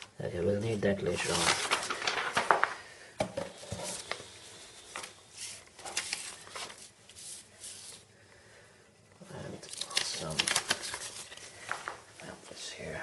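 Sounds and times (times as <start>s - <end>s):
paper rustling and crinkling: 0.8s - 2.9s, 3.5s - 8.1s, 9.6s - 12.1s.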